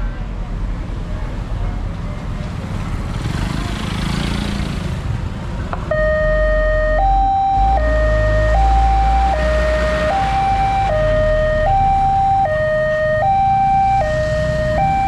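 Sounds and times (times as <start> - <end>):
road traffic passing: 0.0 - 15.0
level crossing two-tone siren: 5.9 - 15.0.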